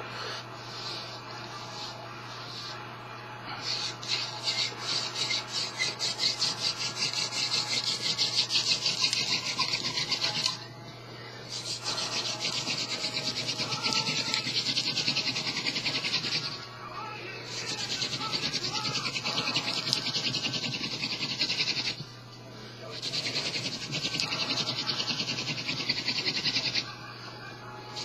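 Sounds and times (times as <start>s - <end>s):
hand drill rasping on wood: 3.6s - 10.7s, 11.5s - 16.7s, 17.5s - 22.0s, 22.9s - 26.9s.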